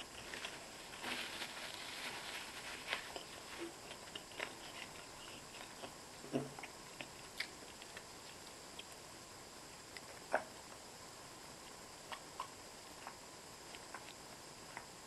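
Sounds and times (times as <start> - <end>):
chewing: 2.8 - 9.0, 11.6 - 15.0.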